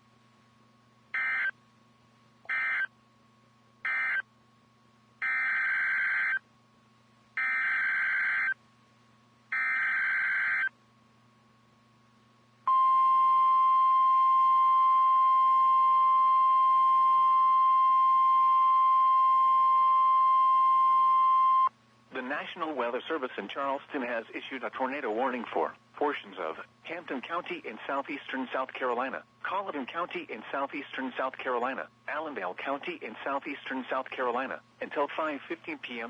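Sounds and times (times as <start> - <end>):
steady warning alarm tone: 1.2 - 1.5, 2.5 - 2.9, 3.9 - 4.2, 5.2 - 6.4, 9.5 - 10.7, 12.7 - 21.7.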